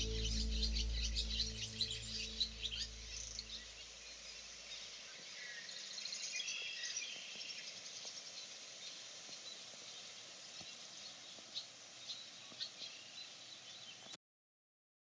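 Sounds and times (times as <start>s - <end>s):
low steady tone: 0.0s - 4.1s
small birds chirping: 0.0s - 14.2s.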